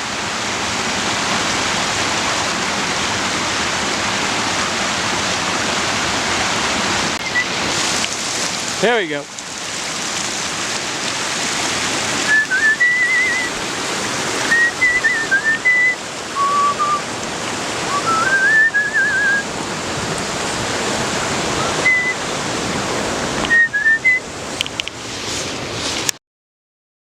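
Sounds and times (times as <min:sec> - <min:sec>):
flowing water rushing: 0:00.0 - 0:26.2
person whistling a tune: 0:07.2 - 0:07.5, 0:12.3 - 0:13.5, 0:14.5 - 0:17.0, 0:17.9 - 0:19.4, 0:21.6 - 0:22.2, 0:23.5 - 0:24.2.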